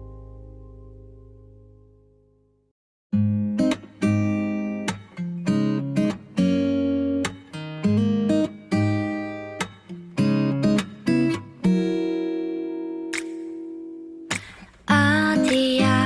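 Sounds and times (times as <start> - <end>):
acoustic guitar strumming chords: 3.2 - 16.0.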